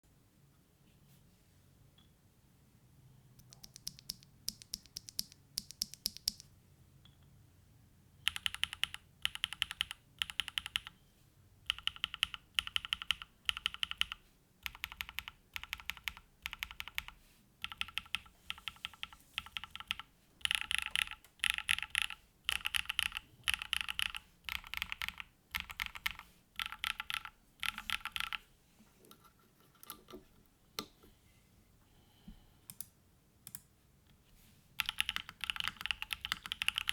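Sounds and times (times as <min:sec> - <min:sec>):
mechanical keyboard typing: 0:03.4 - 0:06.5, 0:08.2 - 0:11.0, 0:11.7 - 0:28.4, 0:34.8 - 0:36.9.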